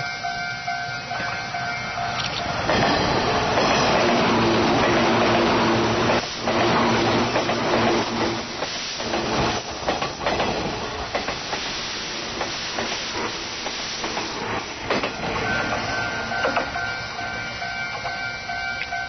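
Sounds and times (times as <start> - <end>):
crossing warning bell ringing: 0.0 - 4.3, 15.3 - 19.0
electric train rolling past: 0.0 - 19.0
wheels clicking over rail joints: 3.5 - 11.7, 12.3 - 17.0.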